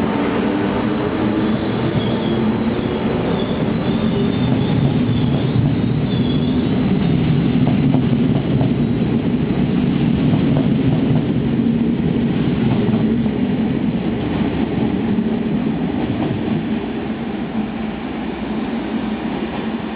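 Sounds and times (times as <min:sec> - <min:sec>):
train wheels rumbling on track: 0:00.0 - 0:19.9
rail joint clicks: 0:01.6 - 0:08.8, 0:10.2 - 0:11.4.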